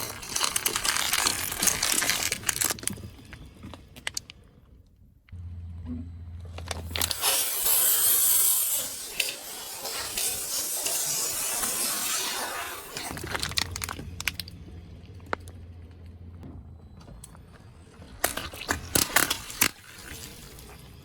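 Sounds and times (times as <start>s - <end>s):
objects crushed under car tyre: 0.0s - 4.6s, 11.8s - 15.6s, 17.8s - 21.0s
crackles and sharp clicks: 0.0s - 5.4s, 6.5s - 16.4s, 17.0s - 20.3s
low engine hum: 2.4s - 7.2s, 13.1s - 18.3s
hissing spraying rush: 7.0s - 13.2s.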